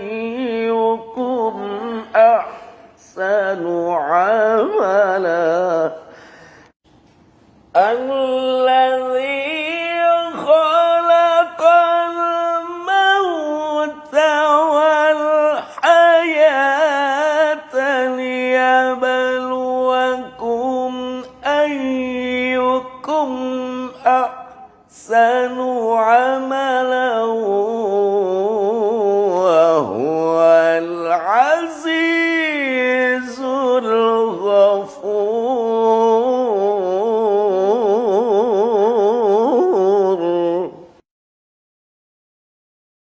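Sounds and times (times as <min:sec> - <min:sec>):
man reciting melodically: 0:00.0 - 0:06.8, 0:07.7 - 0:41.0.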